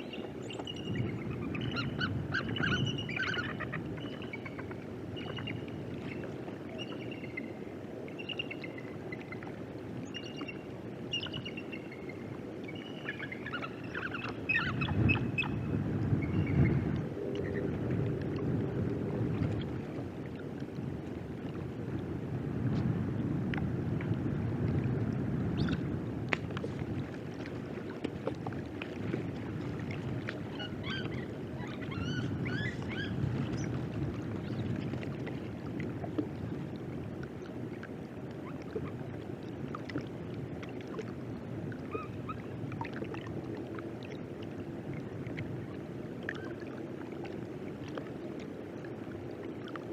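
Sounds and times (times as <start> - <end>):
water noise: 0.0 - 49.9
wind rumble: 14.5 - 37.3.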